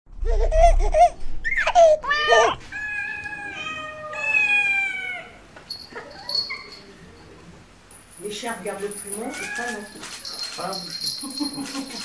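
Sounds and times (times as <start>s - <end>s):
cat meowing: 2.0s - 5.4s.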